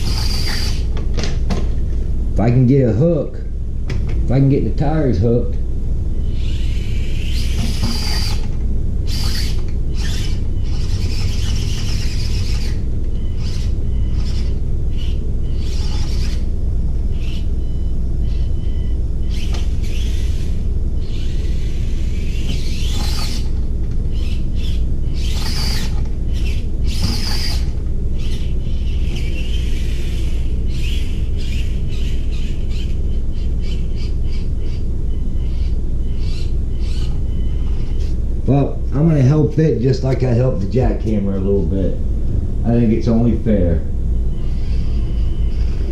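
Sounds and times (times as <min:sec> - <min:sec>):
birds squawking: 0:00.0 - 0:00.9, 0:06.2 - 0:08.5, 0:09.1 - 0:38.4, 0:43.5 - 0:45.9
small electric motor whining: 0:00.0 - 0:01.7, 0:06.1 - 0:38.4, 0:43.5 - 0:45.9
low rumble: 0:34.2 - 0:45.9.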